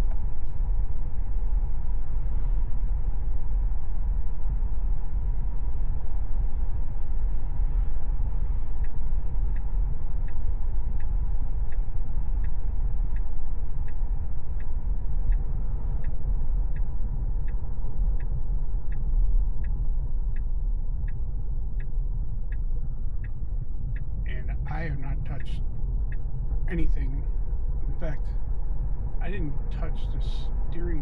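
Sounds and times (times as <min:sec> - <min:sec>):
road and tyre rumble: 0:00.0 - 0:31.0
turn signal ticking: 0:07.5 - 0:28.6, 0:29.2 - 0:31.0.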